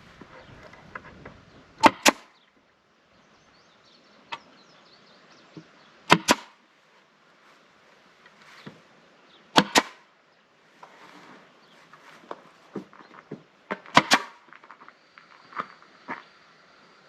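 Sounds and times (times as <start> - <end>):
loud sharp snaps: 6.1 - 6.6, 9.6 - 10.0, 13.9 - 14.4.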